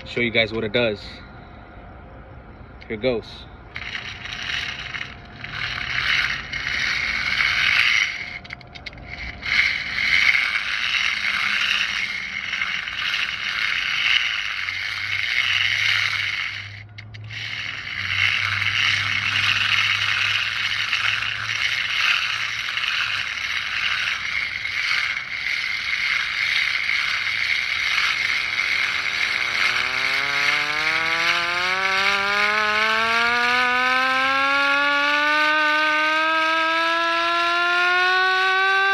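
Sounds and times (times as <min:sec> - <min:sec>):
hand-cranked siren whirring and rattling: 0:00.0 - 0:00.7, 0:02.5 - 0:38.9
siren wail rising: 0:03.6 - 0:38.9.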